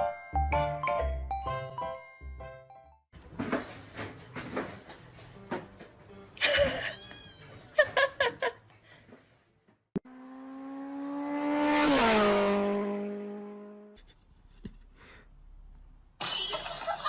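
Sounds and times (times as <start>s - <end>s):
vehicle driving past: 10.1s - 14.0s.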